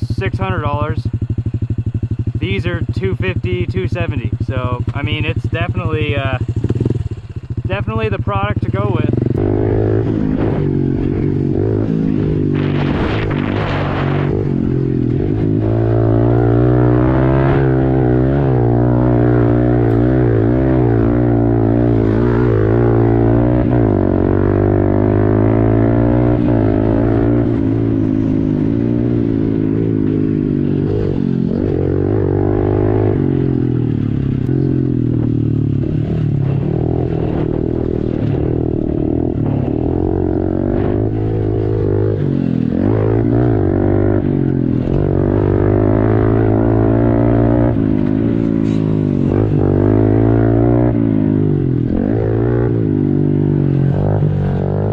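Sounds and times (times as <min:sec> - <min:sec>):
motorbike engine running: 0:00.0 - 0:54.9.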